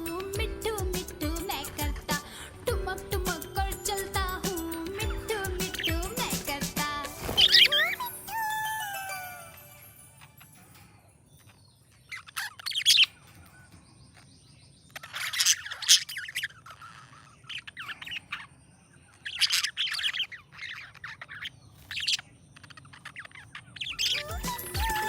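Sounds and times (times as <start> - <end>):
budgerigar chirping: 12.1 - 14.3, 14.9 - 25.0.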